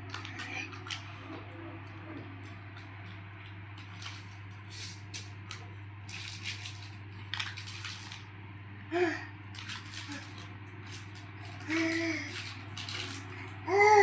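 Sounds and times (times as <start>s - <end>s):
steady low hum: 0.0s - 14.0s
rustling and crackling: 9.5s - 13.6s.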